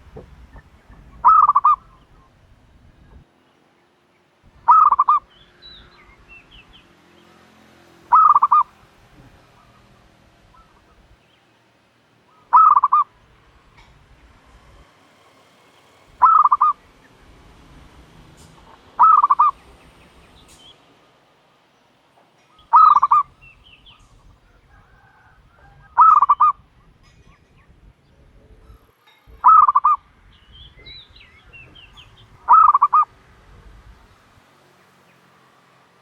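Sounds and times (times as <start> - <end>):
dove calling: 0.0 - 3.3, 4.5 - 7.0, 8.0 - 11.5, 12.2 - 14.8, 16.1 - 17.7, 18.4 - 20.8, 22.4 - 33.7
small birds chirping: 0.0 - 14.5, 15.6 - 17.6, 18.4 - 20.9, 21.6 - 33.7.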